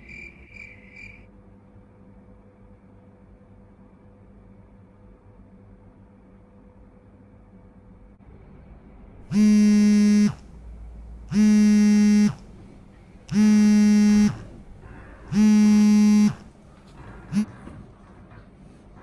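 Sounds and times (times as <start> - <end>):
electronic buzzer: 9.3 - 12.6, 13.3 - 16.6.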